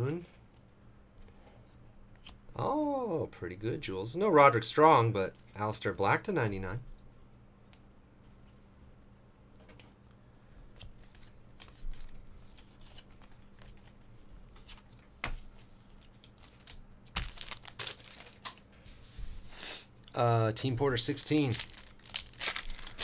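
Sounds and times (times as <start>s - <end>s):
low electrical hum: 0.0s - 23.0s
cards rustling and clicking: 10.7s - 18.7s, 20.6s - 23.0s
wrapper crinkling: 16.2s - 18.7s, 20.6s - 23.0s.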